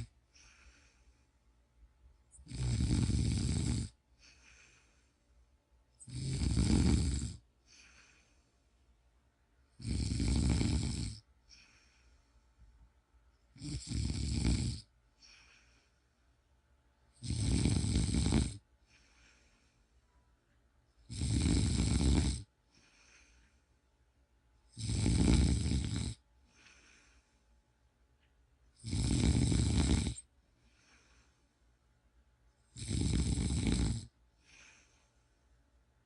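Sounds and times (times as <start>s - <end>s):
faint breaths: 0.0s - 2.5s, 3.2s - 9.8s, 11.2s - 13.6s, 14.8s - 24.0s, 25.0s - 31.9s, 32.5s - 35.8s
person snoring loudly: 2.4s - 4.0s, 6.0s - 7.4s, 9.8s - 11.2s, 13.6s - 14.9s, 17.2s - 18.6s, 21.1s - 22.5s, 24.7s - 26.2s, 28.8s - 30.2s, 32.7s - 34.1s.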